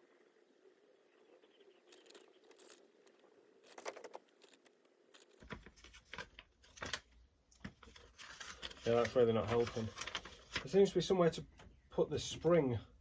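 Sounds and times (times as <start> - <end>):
paper rustling and crinkling: 1.9 - 10.9.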